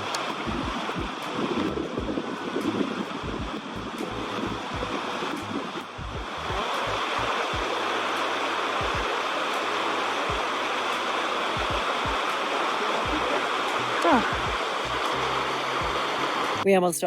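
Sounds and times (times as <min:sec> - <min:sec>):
creek water rushing: 0:00.0 - 0:16.6
short low thumps: 0:00.4 - 0:02.2, 0:03.2 - 0:06.6, 0:13.1 - 0:13.3, 0:14.0 - 0:14.7, 0:15.8 - 0:16.1.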